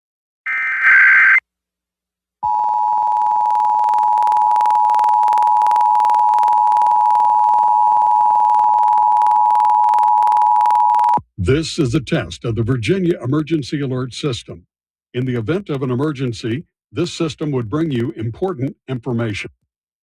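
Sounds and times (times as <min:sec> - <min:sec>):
data burst warble: 0:00.5 - 0:01.4.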